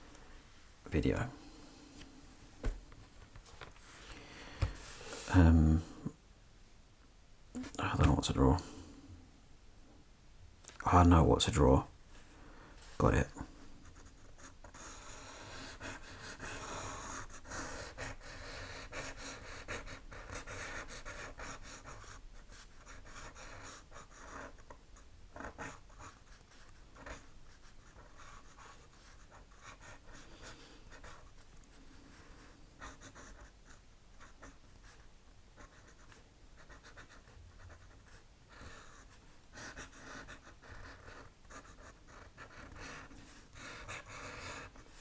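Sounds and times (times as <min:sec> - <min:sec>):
pen scratching on paper: 0:13.9 - 0:24.7, 0:25.4 - 0:30.2, 0:30.9 - 0:31.4, 0:32.2 - 0:35.0, 0:35.6 - 0:45.0.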